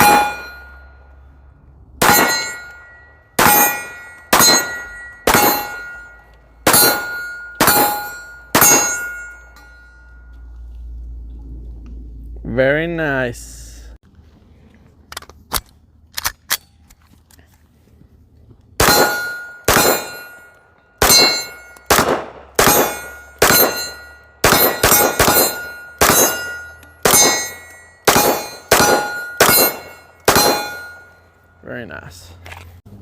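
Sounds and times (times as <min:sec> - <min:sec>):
steel target clanging from hits: 0:00.0 - 0:00.8, 0:02.0 - 0:09.9, 0:18.8 - 0:21.8, 0:22.6 - 0:31.2.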